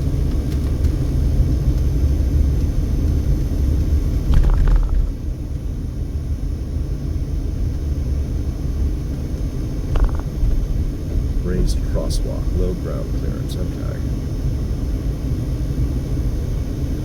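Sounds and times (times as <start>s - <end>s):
car engine and tyres rumbling: 0.0s - 6.2s, 7.7s - 14.8s.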